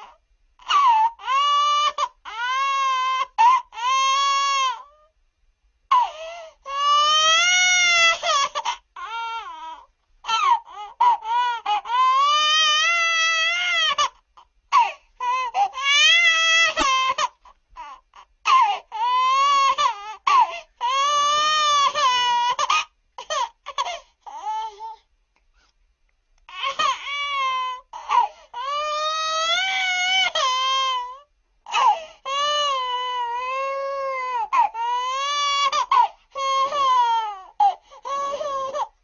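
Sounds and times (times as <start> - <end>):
baby crying: 0.0 - 5.1, 5.9 - 25.1, 26.5 - 39.0.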